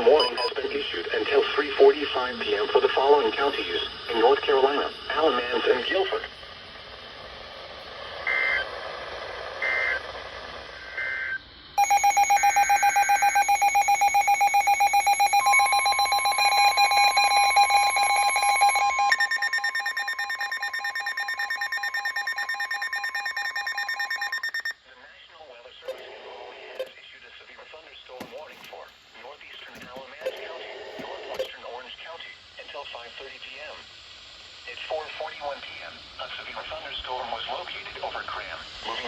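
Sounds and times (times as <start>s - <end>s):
rapidly pulsing electronic alert tone: 0.0s - 0.5s, 11.8s - 24.7s
steady single-pitched alarm tone: 0.0s - 0.6s, 11.8s - 24.7s
warbling data bursts: 11.8s - 24.7s.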